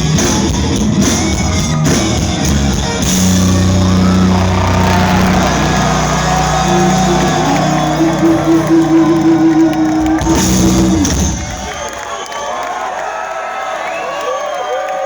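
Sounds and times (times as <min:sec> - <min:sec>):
crowd cheering: 0:01.0 - 0:15.0
rock band chord on electric guitars: 0:03.0 - 0:11.7.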